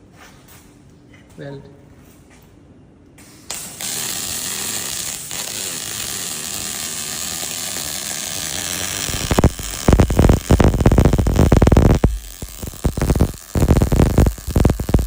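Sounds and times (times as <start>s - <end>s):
welding arc hissing and crackling: 3.5s - 15.0s.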